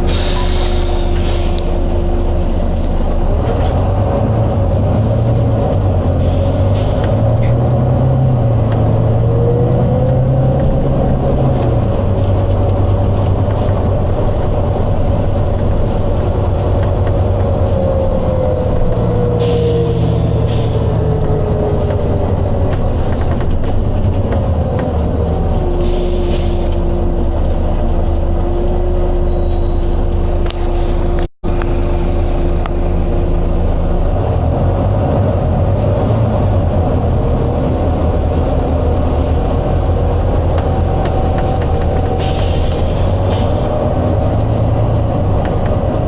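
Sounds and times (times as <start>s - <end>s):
air brake hisses: 0.0s - 1.8s
bus diesel engine running: 0.0s - 46.0s.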